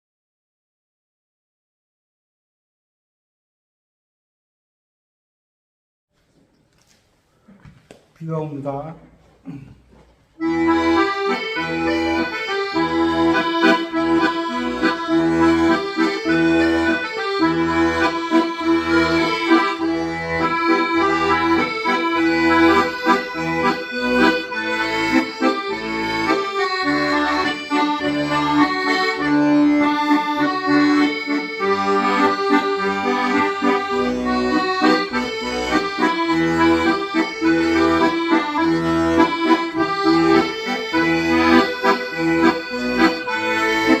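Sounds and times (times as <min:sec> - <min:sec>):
accordion melody: 0:10.3 - 0:44.0.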